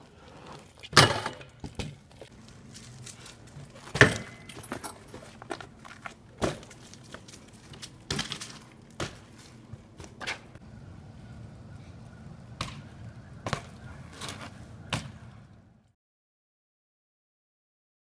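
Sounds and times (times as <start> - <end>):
bmx bike landing knocks: 0.9 - 2.0, 3.8 - 5.7, 6.4 - 6.8, 8.0 - 9.4, 12.6 - 15.2.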